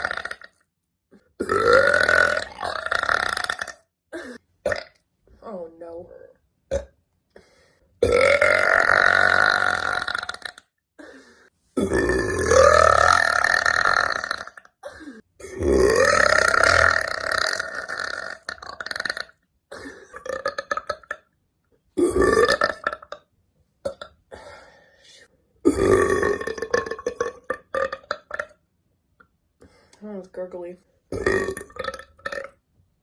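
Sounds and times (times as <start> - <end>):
woman burping: 1.2 - 5.0, 6.7 - 7.0, 8.0 - 10.6, 11.8 - 21.2, 22.0 - 23.2, 25.6 - 28.6, 31.1 - 32.6.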